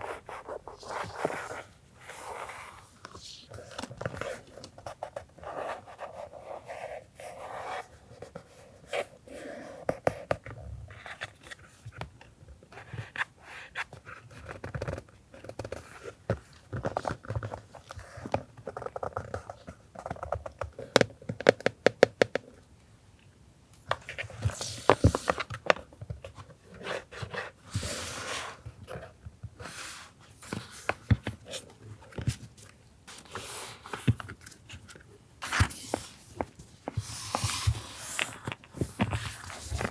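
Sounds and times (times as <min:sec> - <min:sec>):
paper rustling and crinkling: 0:29.7 - 0:39.9.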